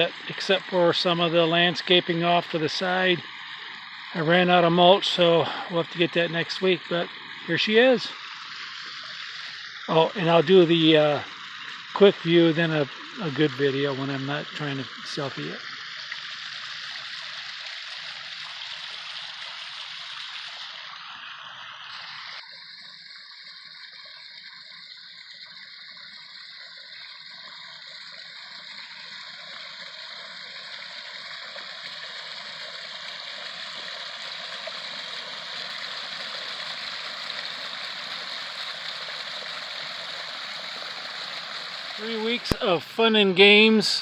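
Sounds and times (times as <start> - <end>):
waterfall splashing: 36.2 - 44.0.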